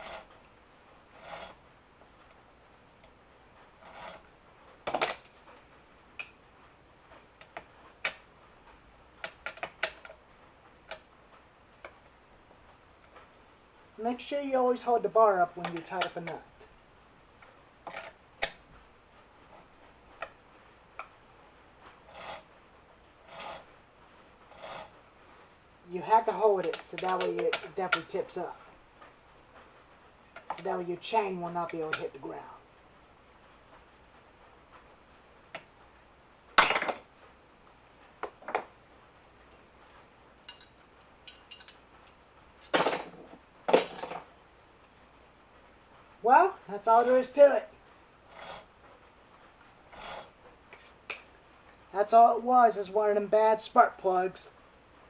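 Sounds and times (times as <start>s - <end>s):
metal tools clinking on chainsaw: 40.5s - 41.8s.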